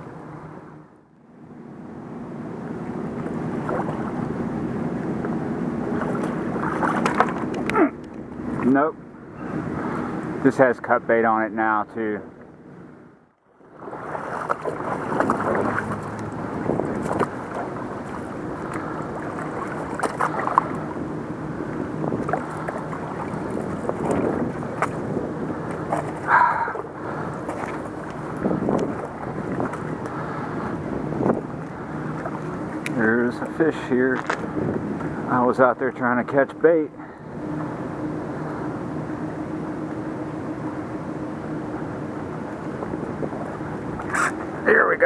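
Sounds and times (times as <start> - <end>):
low motor drone: 0.0 - 45.0
river water rushing: 2.4 - 10.4, 13.6 - 36.1.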